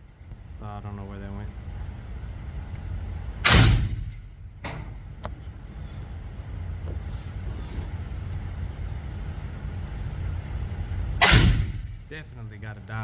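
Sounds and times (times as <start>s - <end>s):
steady low rumble: 0.0s - 13.0s
suppressed gunshot: 3.4s - 4.1s, 11.2s - 11.9s.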